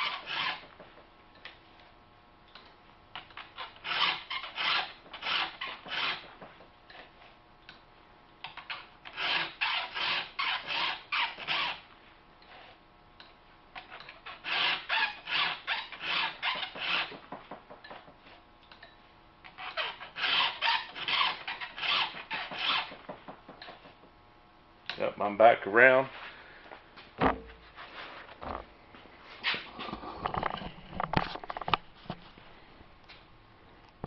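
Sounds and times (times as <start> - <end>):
file rasping on chainsaw chain: 0.0 - 0.6, 3.8 - 6.3, 9.1 - 11.8, 14.3 - 17.2.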